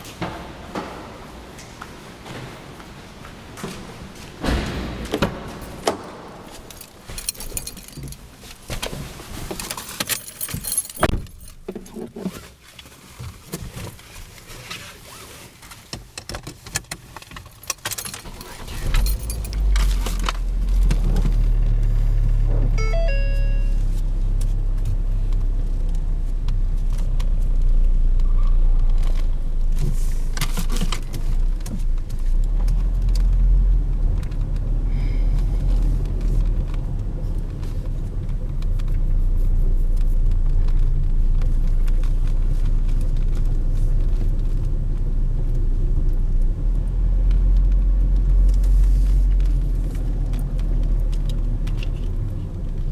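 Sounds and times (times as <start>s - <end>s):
car cabin rumble: 18.2s - 32.4s
short electronic tones: 22.8s - 24.0s.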